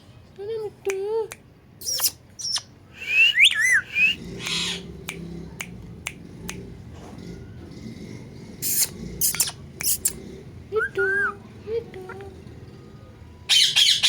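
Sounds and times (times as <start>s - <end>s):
parrot squawking: 1.8s - 4.9s, 8.6s - 10.2s, 13.5s - 14.0s.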